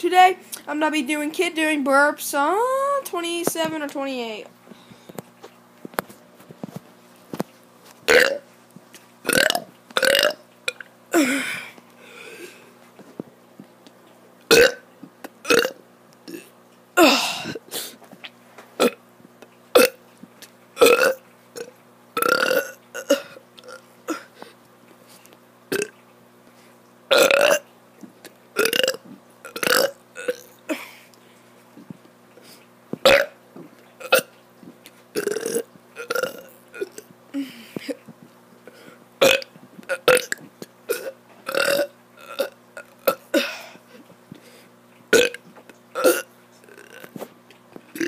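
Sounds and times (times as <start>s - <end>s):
child burping: 8.1s - 8.4s, 9.3s - 10.4s, 11.1s - 11.7s, 14.5s - 14.8s, 15.5s - 17.6s, 18.8s - 19.0s, 19.8s - 20.0s, 20.8s - 24.3s, 27.1s - 27.6s, 33.0s - 33.4s, 35.2s - 38.0s, 39.2s - 43.7s, 46.0s - 47.1s.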